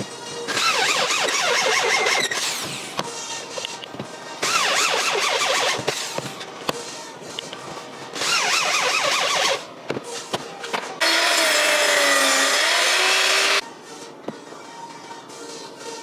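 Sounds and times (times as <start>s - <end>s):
background music: 0.0s - 16.0s
power tool cutting wood: 11.0s - 13.6s.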